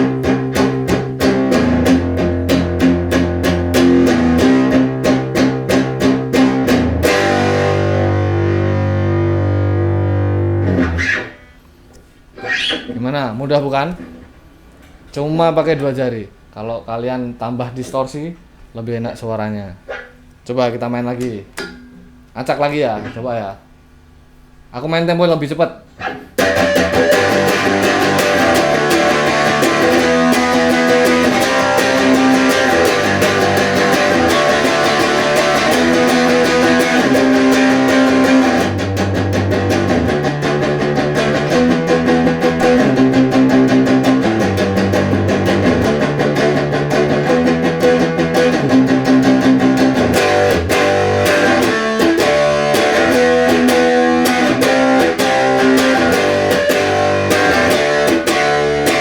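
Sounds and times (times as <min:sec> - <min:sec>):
distorted electric guitar power chords: 0:00.0 - 0:11.7, 0:26.4 - 0:59.0.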